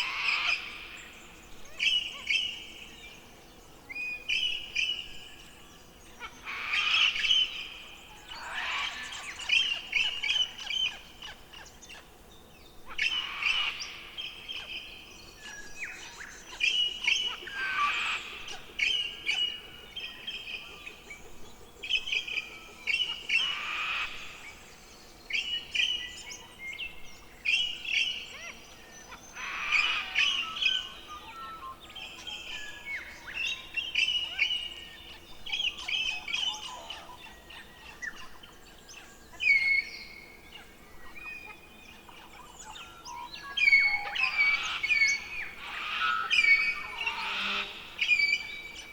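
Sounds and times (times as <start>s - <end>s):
birds chirping: 0.0s - 48.9s
harsh rasping bird calls: 28.3s - 31.0s, 43.5s - 48.9s.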